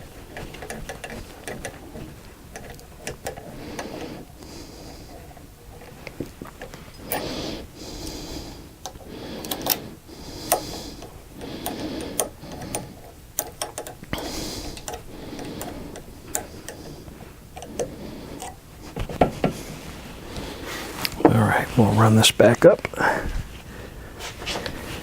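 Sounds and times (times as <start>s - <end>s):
metallic clicks of hand tools: 10.5s - 16.9s.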